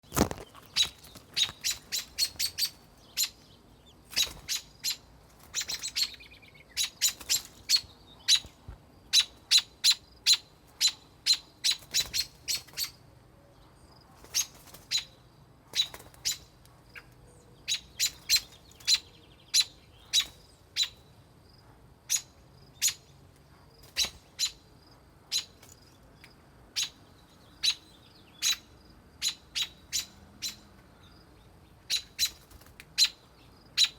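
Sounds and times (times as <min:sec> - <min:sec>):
robin alarm chip calls: 0:00.7 - 0:13.0, 0:14.3 - 0:15.2, 0:15.8 - 0:21.1, 0:22.1 - 0:23.1, 0:24.0 - 0:24.6, 0:25.3 - 0:25.6, 0:26.8 - 0:30.6, 0:31.8 - 0:33.9.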